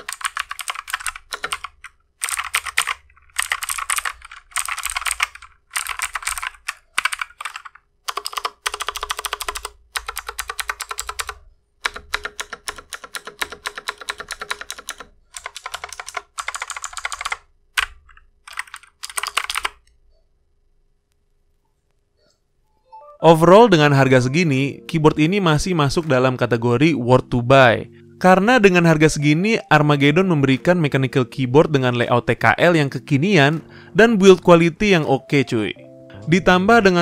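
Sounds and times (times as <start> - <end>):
typing on mechanical keyboard: 0.0 - 19.9.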